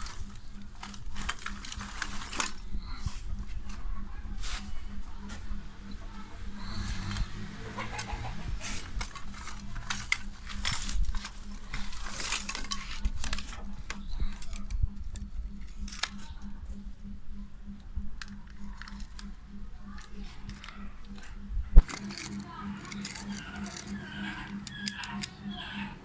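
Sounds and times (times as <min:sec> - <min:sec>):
small metal parts and tools clinking: 0:00.0 - 0:03.1, 0:08.6 - 0:15.2, 0:21.8 - 0:25.5
faint steady hum: 0:00.0 - 0:26.0.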